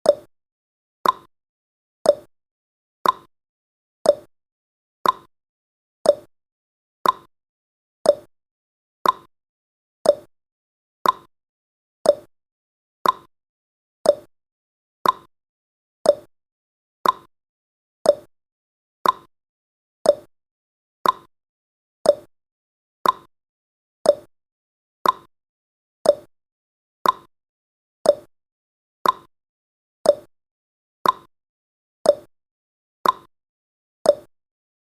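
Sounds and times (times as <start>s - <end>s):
clock-like timer ticks: 0.0s - 0.3s, 1.0s - 1.3s, 2.0s - 2.3s, 3.0s - 3.3s, 4.0s - 4.3s, 5.0s - 5.3s, 6.0s - 6.3s, 7.0s - 7.3s, 8.0s - 8.3s, 9.0s - 9.3s, 10.0s - 10.3s, 11.0s - 11.3s, 12.0s - 12.3s, 13.0s - 13.3s, 14.0s - 14.3s, 15.0s - 15.3s, 16.0s - 16.3s, 17.0s - 17.3s, 18.0s - 18.3s, 19.0s - 19.3s, 20.0s - 20.3s, 21.0s - 21.3s, 22.0s - 22.3s, 23.0s - 23.3s, 24.0s - 24.3s, 25.0s - 25.3s, 26.0s - 26.3s, 27.0s - 27.3s, 28.0s - 28.3s, 29.0s - 29.3s, 30.0s - 30.3s, 31.0s - 31.3s, 32.0s - 32.3s, 33.0s - 33.3s, 34.0s - 34.3s.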